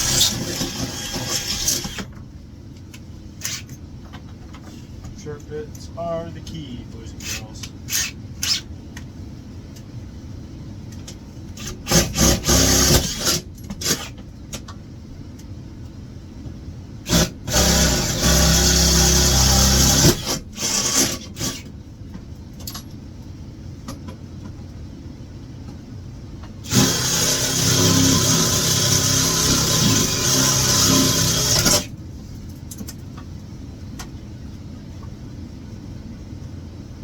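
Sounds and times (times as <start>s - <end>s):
power drill boring through metal: 0.0s - 2.0s, 11.9s - 13.4s, 17.1s - 21.6s, 26.7s - 31.9s.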